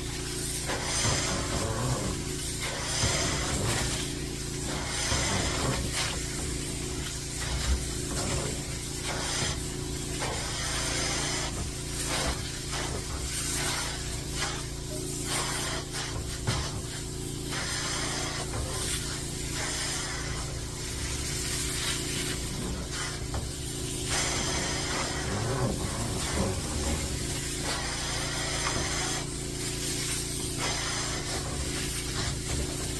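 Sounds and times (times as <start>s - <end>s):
extraction cleaner machine hum: 0.0s - 32.9s
hissing spray and suction: 0.0s - 32.9s.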